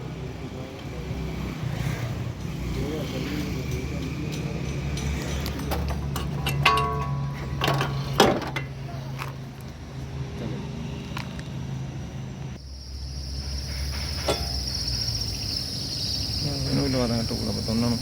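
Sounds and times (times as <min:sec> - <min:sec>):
metal tool clicks and knocks: 0:03.7 - 0:08.7
cricket chirring: 0:12.6 - 0:18.0.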